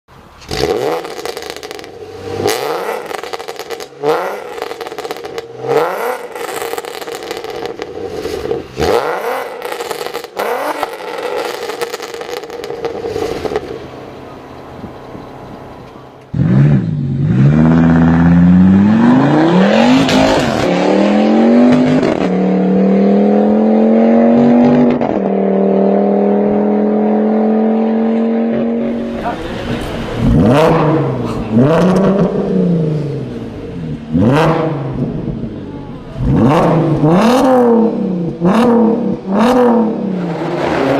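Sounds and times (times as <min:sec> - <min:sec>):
exhaust pops and crackles: 0:00.4 - 0:05.5, 0:06.4 - 0:08.6, 0:09.6 - 0:13.8
car engine revving: 0:00.4 - 0:40.9.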